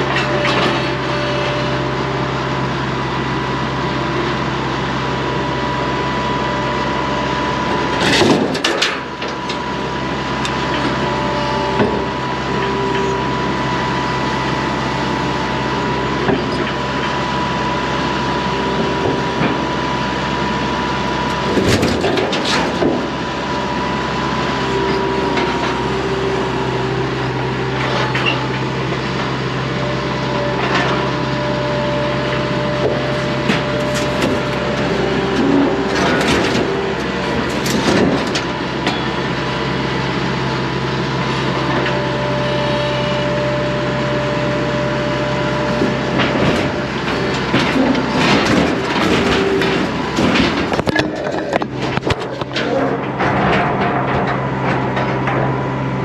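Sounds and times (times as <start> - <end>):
engine running: 0.0 - 56.0
knocks and clatters: 46.2 - 55.6.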